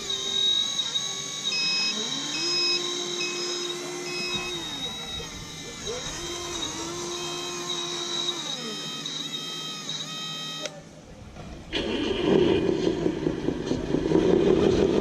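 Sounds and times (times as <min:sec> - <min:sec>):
short high beeps: 0:00.0 - 0:05.3
electric motor whining: 0:00.0 - 0:10.9.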